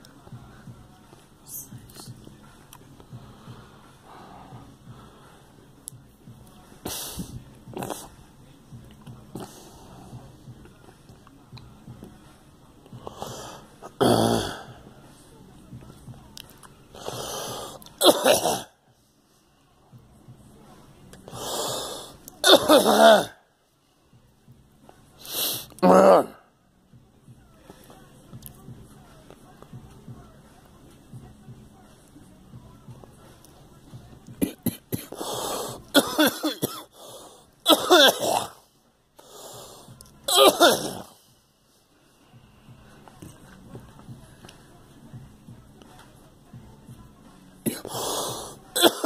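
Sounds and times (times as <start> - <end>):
rasping breaths: 3.0 - 5.6, 9.0 - 10.7, 12.9 - 15.3, 16.9 - 17.9, 21.2 - 22.3, 35.0 - 36.0, 36.8 - 37.6, 38.4 - 40.1, 47.6 - 48.8
person coughing: 18.0 - 18.7, 22.4 - 23.4, 34.4 - 35.3, 35.9 - 36.9, 37.7 - 38.6, 40.3 - 41.1, 47.6 - 48.0, 48.8 - 49.0.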